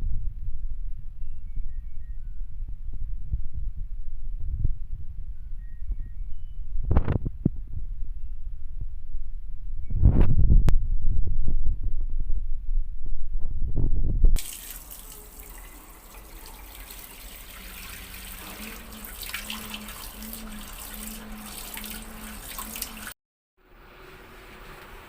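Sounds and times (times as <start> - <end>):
pulsing low hum: 0.0 - 14.4
water splashing in washing machine: 14.4 - 23.2.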